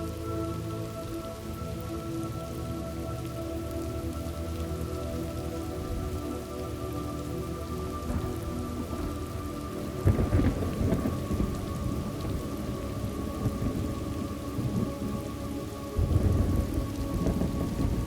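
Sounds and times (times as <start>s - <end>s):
steady rain: 0.0s - 18.0s
rolling thunder: 8.1s - 14.0s, 16.0s - 18.0s.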